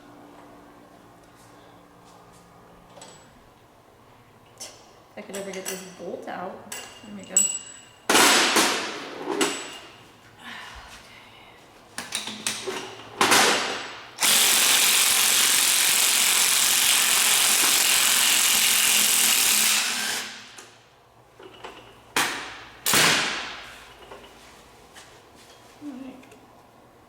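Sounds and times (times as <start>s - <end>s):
pneumatic tool hissing: 14.2s - 20.5s.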